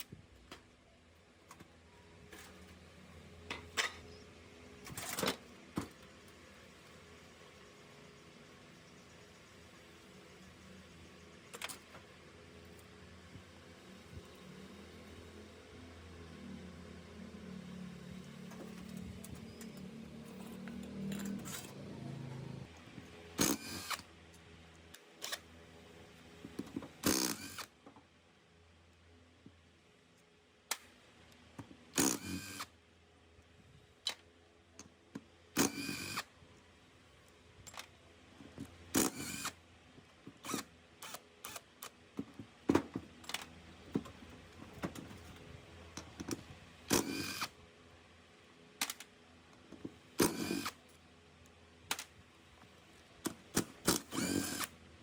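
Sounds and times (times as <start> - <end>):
handheld power tool bursts: 23.4 - 24.0, 27.0 - 27.7, 32.0 - 32.7, 35.6 - 36.2, 39.0 - 39.6, 46.9 - 47.5, 50.2 - 50.8, 53.6 - 54.8.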